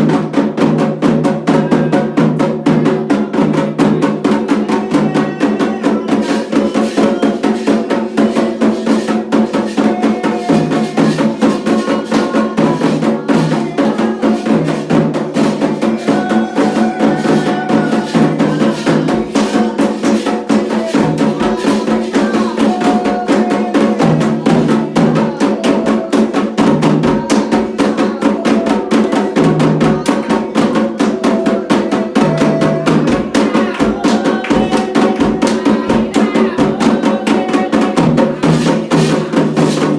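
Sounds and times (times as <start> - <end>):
bell-like percussion: 0.0 - 39.9
hand drums: 0.0 - 39.9.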